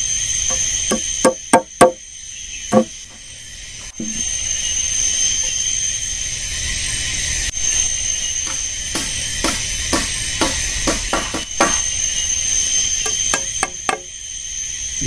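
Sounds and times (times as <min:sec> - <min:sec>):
high-pitched buzzing drone: 0:00.0 - 0:15.0
sharp knocks: 0:00.5 - 0:02.0, 0:02.7 - 0:03.0, 0:08.5 - 0:11.9.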